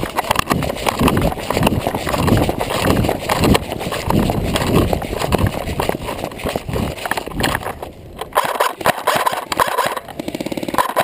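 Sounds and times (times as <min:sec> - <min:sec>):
gear and clothing rustling: 0:00.0 - 0:10.1
quick footsteps: 0:00.0 - 0:11.0.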